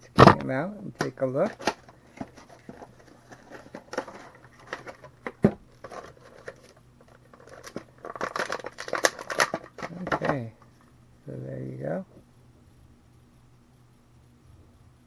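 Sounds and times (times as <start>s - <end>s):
plastic and card crinkling: 0.9s - 10.8s.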